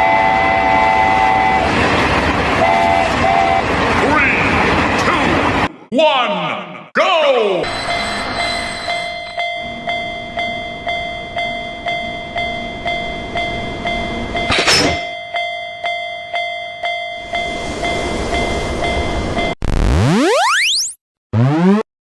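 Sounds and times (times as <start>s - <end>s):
passing train: 0.0s - 5.9s, 7.6s - 14.6s, 15.9s - 19.6s
railroad crossing bell ringing: 7.6s - 19.6s.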